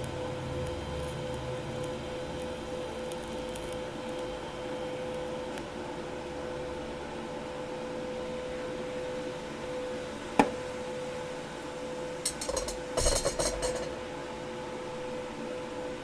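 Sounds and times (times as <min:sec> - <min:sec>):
background machinery hum: 0:00.0 - 0:16.0
clattering handling noise: 0:12.3 - 0:13.9.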